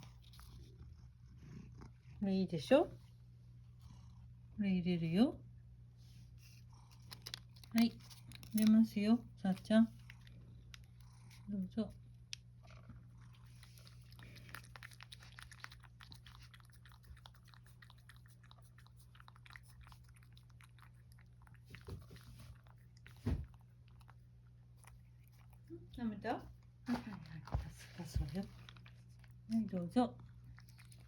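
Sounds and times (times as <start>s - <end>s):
cat licking and smacking: 9.9s - 31.0s.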